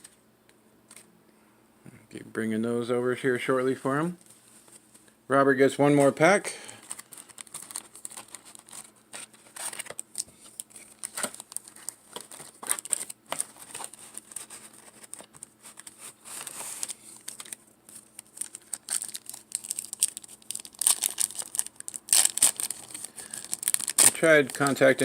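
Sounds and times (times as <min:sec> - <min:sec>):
paper wrapper tearing and crinkling: 0:06.8 - 0:25.0.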